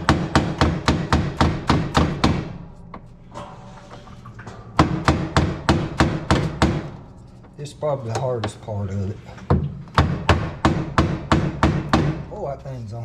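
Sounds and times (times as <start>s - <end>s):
hammer tapping on metal: 9.5s - 12.3s.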